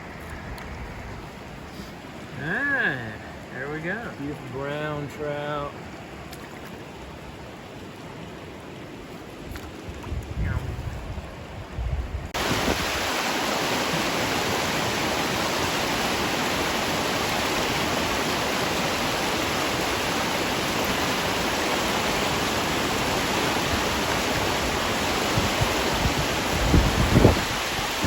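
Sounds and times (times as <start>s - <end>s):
wind buffeting microphone: 9.4s - 13.3s, 23.4s - 28.0s
river rapids rushing: 12.4s - 28.0s.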